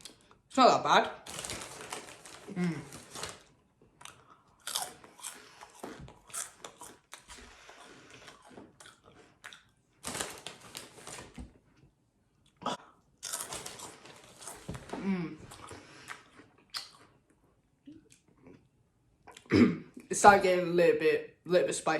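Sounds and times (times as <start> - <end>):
loud chewing and crunching: 4.0 - 10.9, 13.2 - 14.7, 15.5 - 17.3.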